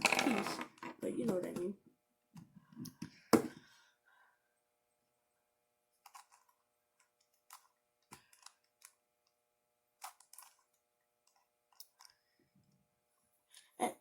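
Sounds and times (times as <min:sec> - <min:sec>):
plastic puzzle clicks: 0:06.1 - 0:09.0.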